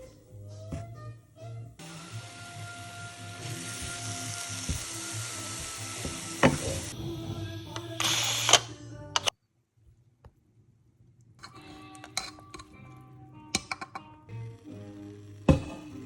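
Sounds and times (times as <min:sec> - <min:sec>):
background music: 0:00.0 - 0:09.3, 0:11.4 - 0:16.0
food sizzling in a hot pan: 0:01.8 - 0:08.6.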